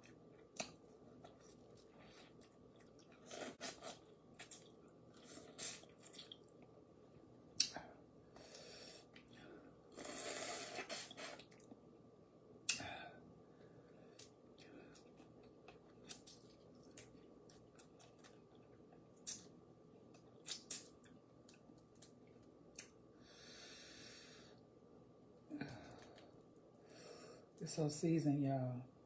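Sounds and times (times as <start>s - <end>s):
wet sucking and chewing: 0.5s - 6.6s, 8.4s - 11.7s, 20.4s - 22.2s.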